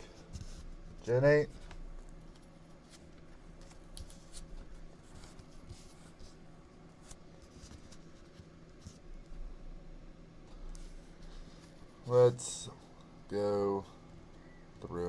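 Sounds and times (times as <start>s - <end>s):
trading cards rustling and scraping: 0.0s - 9.4s, 10.4s - 12.5s
low steady hum: 0.0s - 15.0s.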